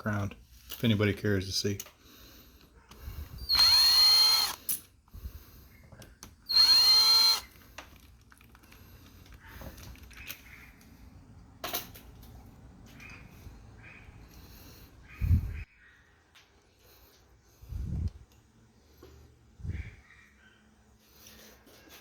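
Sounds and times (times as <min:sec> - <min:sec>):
power drill whining: 0:02.9 - 0:05.3, 0:06.3 - 0:07.7.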